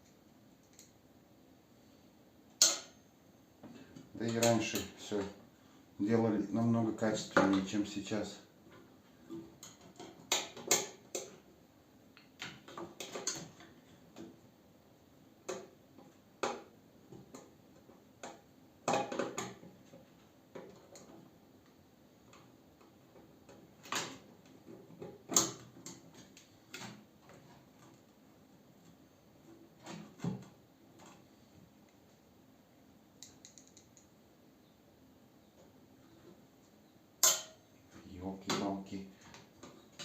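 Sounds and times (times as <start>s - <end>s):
hand tools clicking and tapping: 33.2s - 34.1s.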